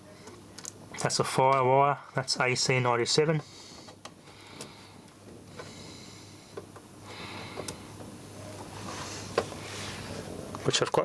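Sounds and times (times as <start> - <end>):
low steady hum: 0.0 - 11.0
cables rustling and clicking: 0.2 - 1.7.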